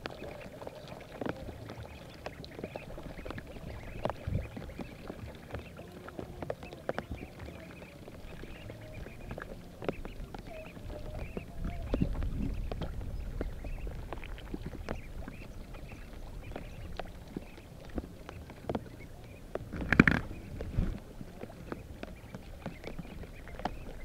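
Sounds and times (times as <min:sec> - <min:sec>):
ducklings peeping: 0:00.0 - 0:24.0
low rumble of water: 0:00.0 - 0:24.0
water splashes: 0:00.0 - 0:24.0.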